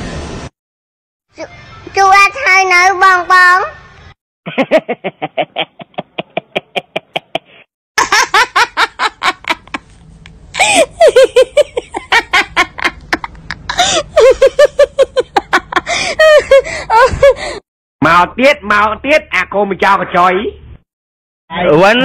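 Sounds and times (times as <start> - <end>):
hearty laughter: 4.5 - 9.9, 10.6 - 17.6.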